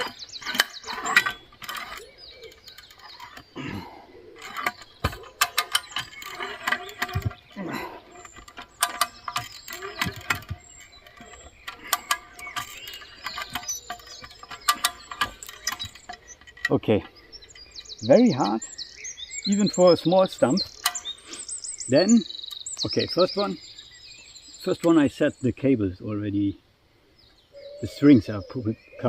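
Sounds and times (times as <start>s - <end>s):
ratchet cable puller clicking: 0.0s - 3.6s, 4.4s - 7.5s, 8.1s - 16.7s.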